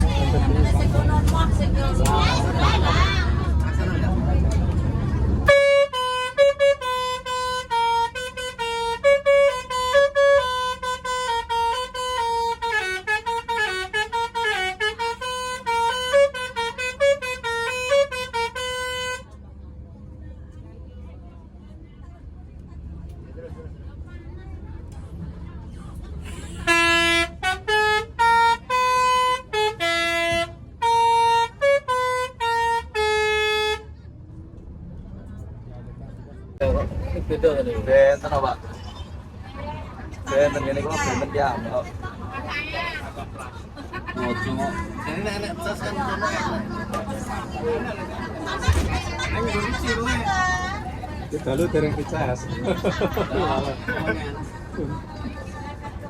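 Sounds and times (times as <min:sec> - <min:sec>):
bus horn playing a melody: 0:05.4 - 0:19.4, 0:26.2 - 0:34.0.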